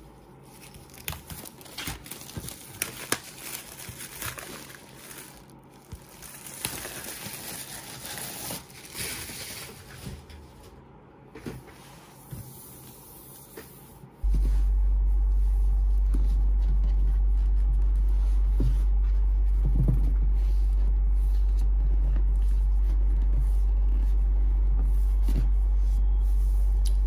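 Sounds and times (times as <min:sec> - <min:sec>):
loud low hum: 0:14.2 - 0:27.0.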